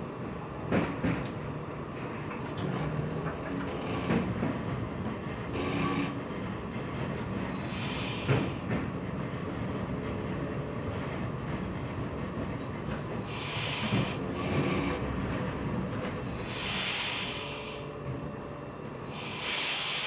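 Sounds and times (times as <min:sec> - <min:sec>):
train rumbling on track: 0:00.0 - 0:20.0
high hissing: 0:16.3 - 0:17.8, 0:19.0 - 0:20.0.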